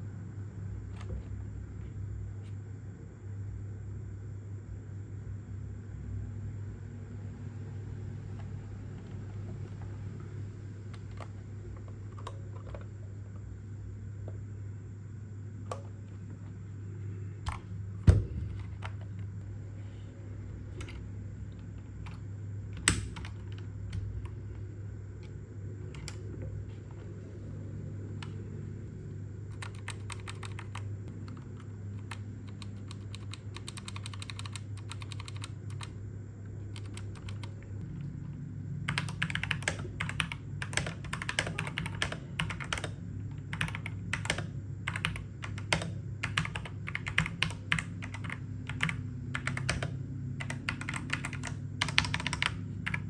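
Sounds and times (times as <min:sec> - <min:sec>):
steady low hum: 0:00.0 - 0:53.0
mechanical keyboard typing: 0:22.8 - 0:24.3, 0:29.5 - 0:36.0, 0:36.8 - 0:37.6, 0:38.9 - 0:53.0.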